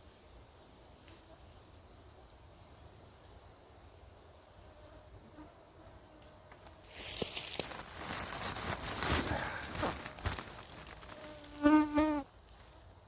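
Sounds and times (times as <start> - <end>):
dry moss rustling: 6.5 - 13.0
flying insect buzzing: 10.8 - 12.3.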